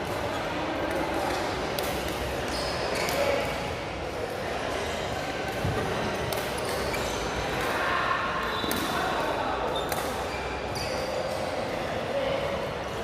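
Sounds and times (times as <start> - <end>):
shoe squeaks on court floor: 2.5 - 3.4, 6.6 - 7.4, 9.7 - 11.6.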